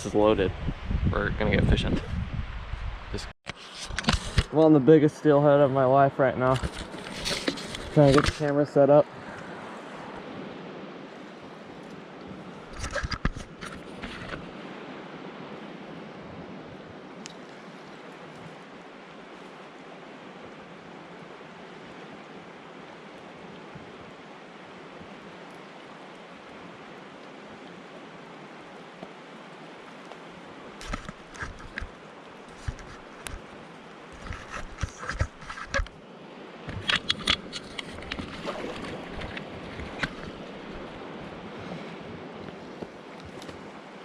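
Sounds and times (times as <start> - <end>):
flowing river water: 0.0 - 44.0
sharp clicks and knocks: 36.7 - 40.3.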